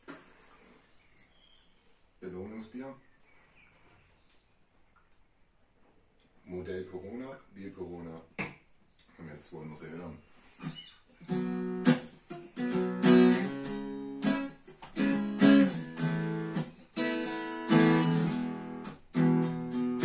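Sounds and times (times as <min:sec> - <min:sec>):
acoustic guitar strumming: 0:11.2 - 0:20.0.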